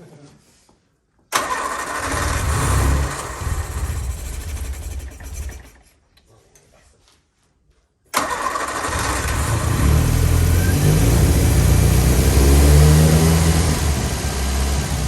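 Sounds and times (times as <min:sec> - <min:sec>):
car engine cranking and starting: 0:01.3 - 0:05.9, 0:08.1 - 0:15.0.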